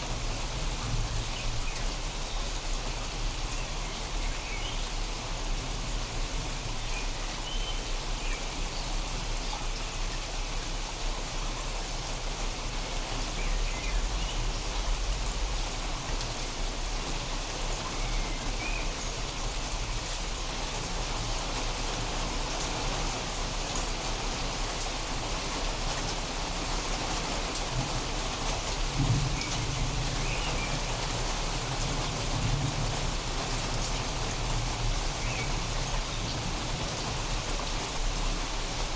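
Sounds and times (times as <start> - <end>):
heavy rain pattering: 0.0 - 38.9
distant thunder rumble: 27.8 - 37.3.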